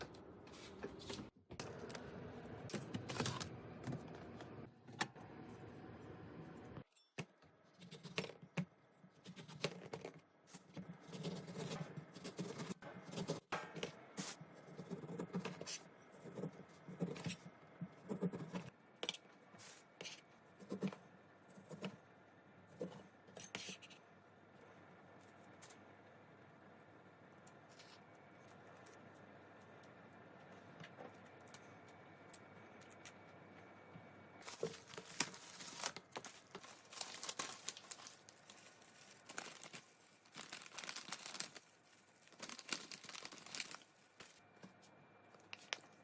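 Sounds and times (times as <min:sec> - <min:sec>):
food and packaging handling: 0:34.4 - 0:46.0.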